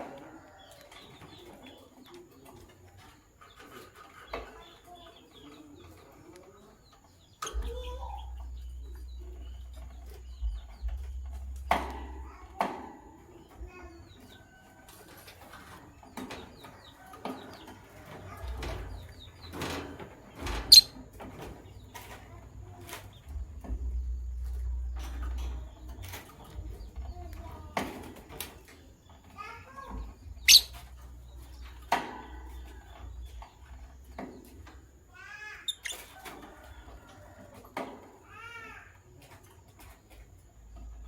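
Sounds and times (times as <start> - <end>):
lovebirds chirping: 0.3 - 12.5, 13.2 - 27.8, 28.6 - 37.4
low rumble: 7.6 - 12.3.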